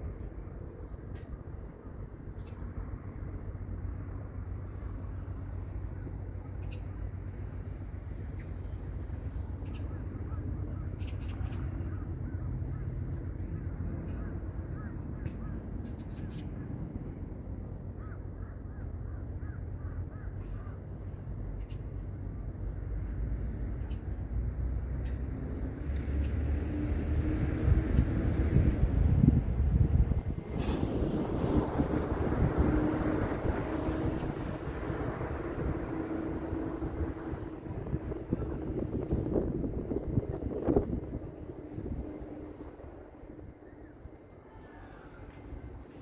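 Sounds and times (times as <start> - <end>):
wind buffeting microphone: 26.6 - 44.4.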